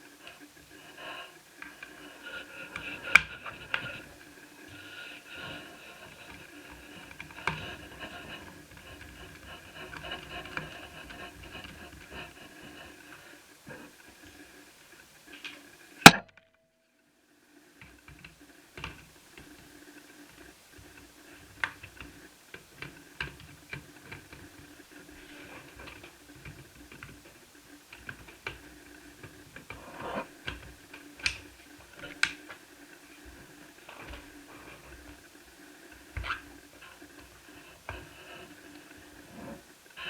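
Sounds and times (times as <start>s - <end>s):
plastic parts clicking and tapping: 2.6s - 12.4s, 17.8s - 19.7s, 20.4s - 32.7s
loud sharp click: 16.0s - 16.4s.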